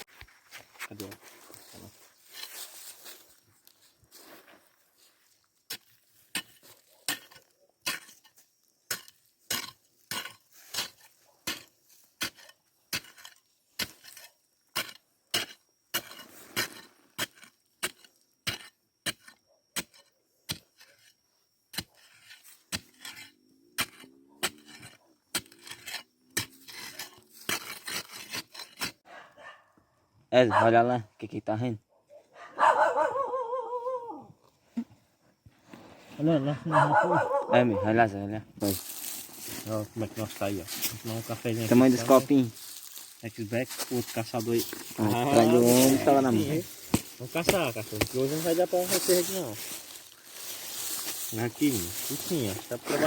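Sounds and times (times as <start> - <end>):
metal tool striking stony ground: 5.7 - 20.7, 38.6 - 53.0.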